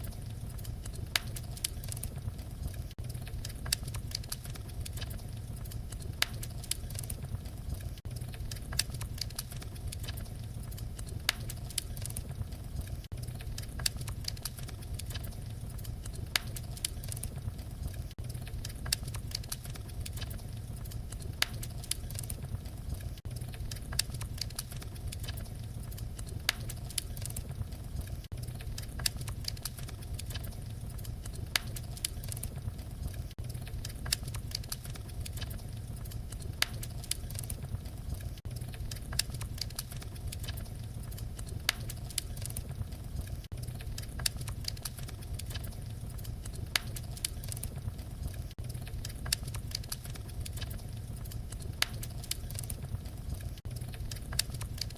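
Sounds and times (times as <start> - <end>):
low rumble of burning: 0.0 - 54.9
wood fire crackling: 0.0 - 54.9.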